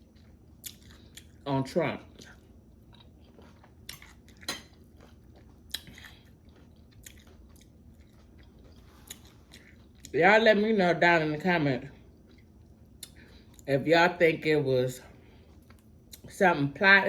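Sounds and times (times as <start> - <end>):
chewing fried chicken: 0.0 - 10.2, 11.9 - 13.7, 15.1 - 16.4.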